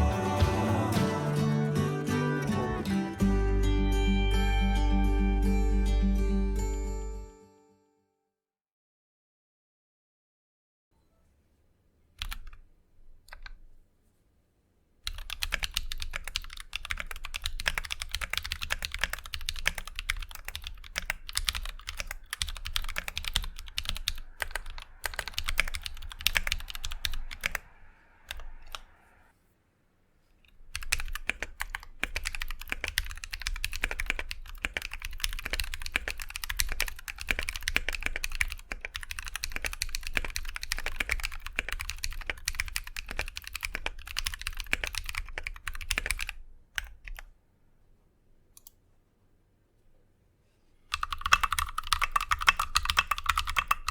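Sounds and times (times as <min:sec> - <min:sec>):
typing on mechanical keyboard: 0:12.2 - 0:12.6, 0:15.0 - 0:27.7, 0:30.5 - 0:47.3, 0:50.9 - 0:53.9.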